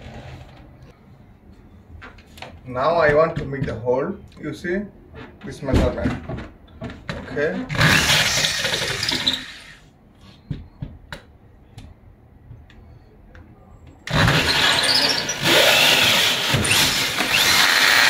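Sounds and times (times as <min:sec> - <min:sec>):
power drill boring through wall: 0:07.7 - 0:09.8, 0:14.1 - 0:18.0.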